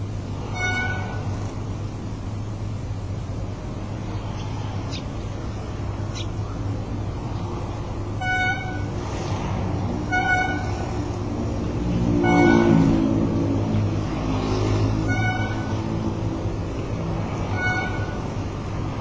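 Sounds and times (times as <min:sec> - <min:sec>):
road traffic rumble: 0:00.0 - 0:19.0
horn toots: 0:00.4 - 0:01.4, 0:08.2 - 0:09.0, 0:10.0 - 0:11.0, 0:12.0 - 0:13.4, 0:14.9 - 0:16.0, 0:17.5 - 0:18.3.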